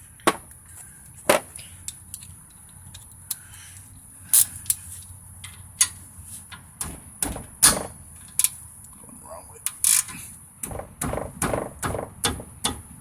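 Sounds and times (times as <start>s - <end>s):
hand tools clicking on metal: 9.6s - 10.2s.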